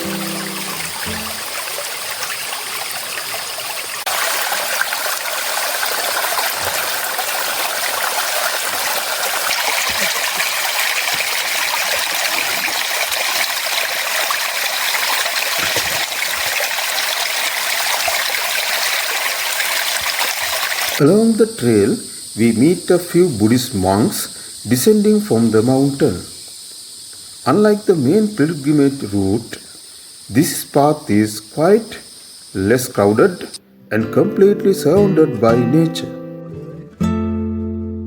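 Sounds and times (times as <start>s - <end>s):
stream running over rocks: 0.0s - 21.1s.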